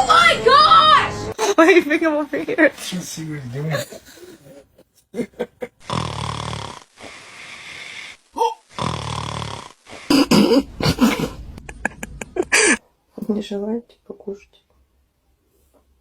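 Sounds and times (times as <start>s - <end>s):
cat snoring: 5.9s - 8.2s, 8.8s - 10.1s.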